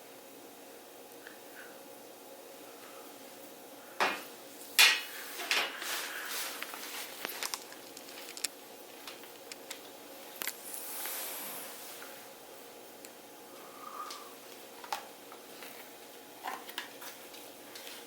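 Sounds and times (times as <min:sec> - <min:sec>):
soft rustle: 0:05.8 - 0:08.3.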